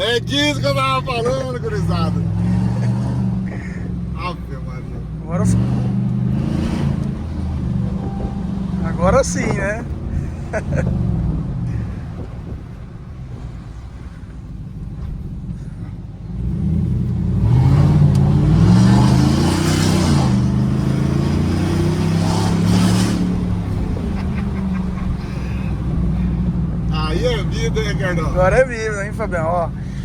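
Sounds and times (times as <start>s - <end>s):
truck engine revving: 0.0s - 30.0s.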